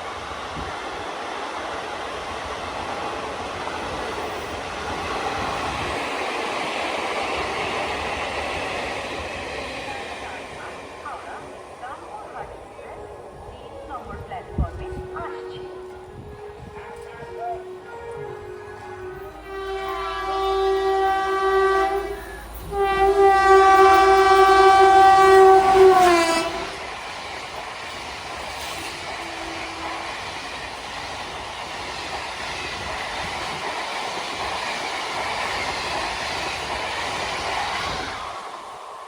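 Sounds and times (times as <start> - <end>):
train coaches rolling on rails: 0.0 - 39.0
locomotive horn blasts: 15.0 - 26.8, 29.2 - 30.2.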